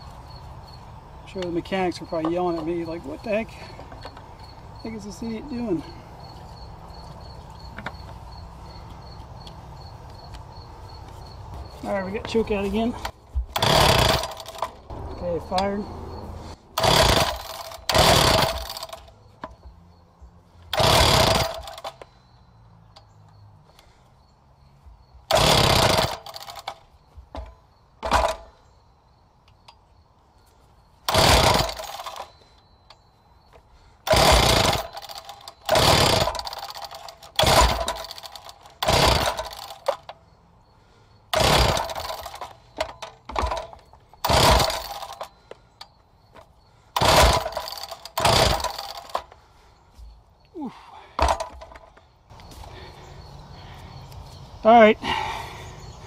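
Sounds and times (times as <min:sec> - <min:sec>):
engine recoil cranking: 0:11.8 - 0:19.9, 0:20.6 - 0:22.3, 0:25.2 - 0:28.8, 0:31.0 - 0:32.8, 0:34.0 - 0:52.9.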